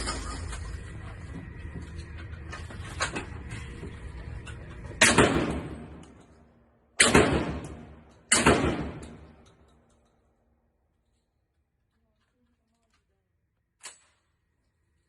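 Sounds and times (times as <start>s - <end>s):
shotgun blasts with echo: 5.0s - 6.0s, 7.0s - 9.4s.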